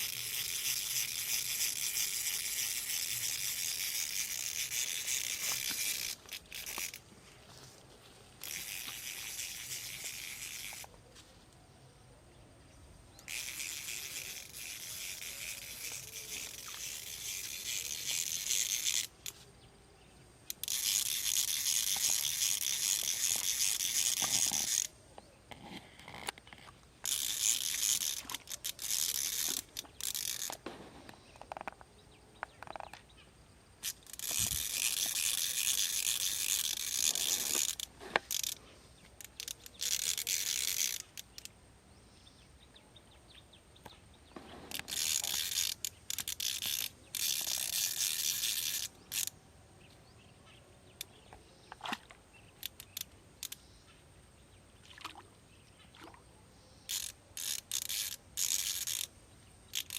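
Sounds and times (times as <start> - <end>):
fishing reel cranking whir: 0.0 - 7.1, 8.4 - 11.0, 13.1 - 19.4, 20.4 - 30.6, 33.8 - 38.6, 39.2 - 41.5, 44.7 - 49.4, 52.6 - 53.6, 56.9 - 59.1, 59.7 - 59.9
reel clicks: 0.0 - 7.1, 8.4 - 11.7, 13.1 - 19.5, 20.4 - 33.1, 33.8 - 41.6, 43.8 - 50.0, 50.9 - 53.8, 55.9 - 59.9.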